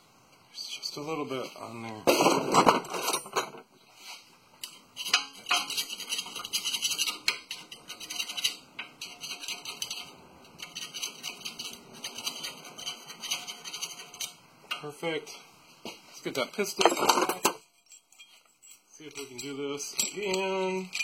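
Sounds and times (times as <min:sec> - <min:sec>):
brush scratching on metal: 0:05.0 - 0:14.4
light metallic clinks: 0:16.9 - 0:21.0.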